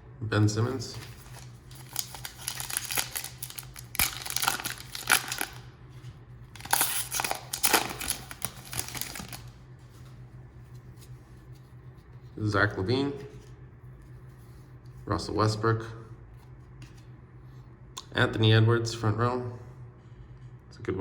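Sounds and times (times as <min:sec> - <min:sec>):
foil pack tearing and crinkling: 0:00.9 - 0:05.7, 0:06.5 - 0:09.6.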